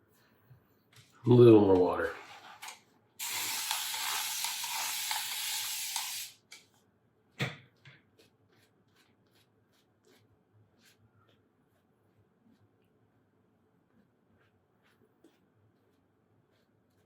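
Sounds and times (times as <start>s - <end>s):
water running: 3.2s - 6.4s.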